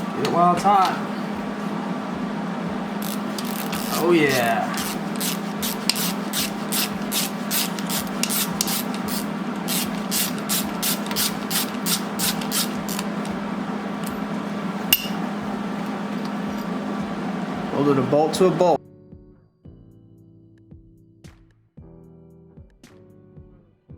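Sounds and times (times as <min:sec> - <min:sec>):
steady low hum: 0:00.0 - 0:18.8
rasping metal tool strokes: 0:03.0 - 0:13.4.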